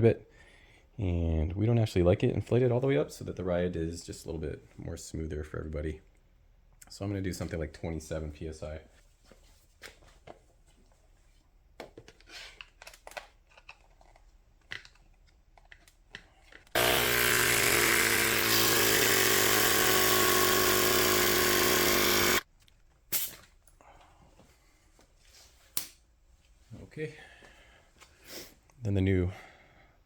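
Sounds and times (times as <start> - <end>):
electric tire inflator running: 16.8 - 22.4.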